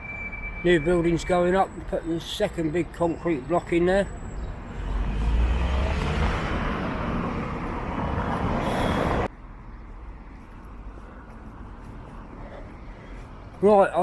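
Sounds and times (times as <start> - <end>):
street background: 0.0 - 14.0
vehicle passing close by: 4.6 - 9.3.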